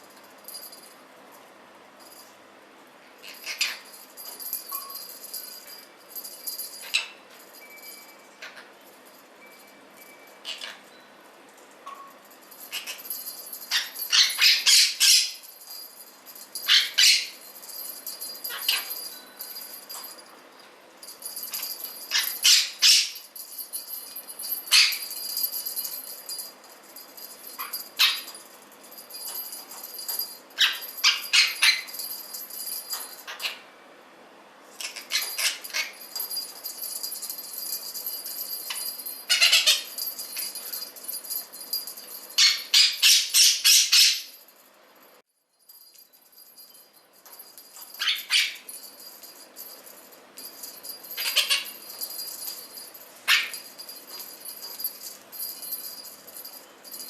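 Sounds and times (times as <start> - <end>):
metal toy bell ringing: 0.0 - 1.0, 2.0 - 2.4, 3.2 - 11.2, 11.8 - 33.8, 34.8 - 57.0
parrot screeching: 10.5 - 10.8, 39.3 - 39.9, 51.2 - 51.8.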